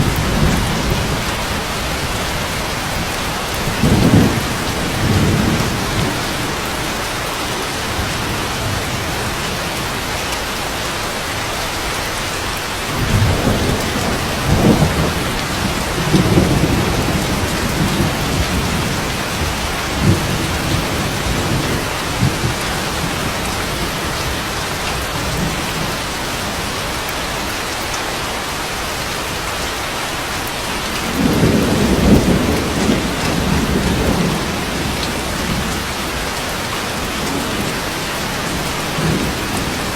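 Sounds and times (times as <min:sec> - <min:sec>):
low rolling thunder: 0:00.0 - 0:09.9, 0:12.9 - 0:26.0, 0:31.0 - 0:39.9
steady rain falling: 0:00.0 - 0:39.9.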